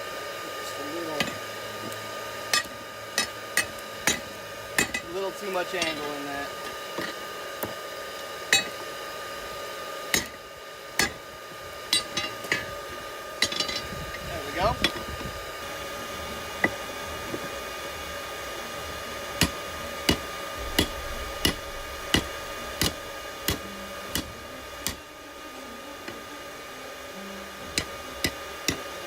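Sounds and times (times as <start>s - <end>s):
steady hum: 0.0s - 29.0s
hammer striking steel on anvil: 2.5s - 5.0s, 8.5s - 8.8s, 10.1s - 10.4s, 11.0s - 11.2s, 11.9s - 12.7s, 13.4s - 13.8s, 19.4s - 25.0s, 27.7s - 28.9s.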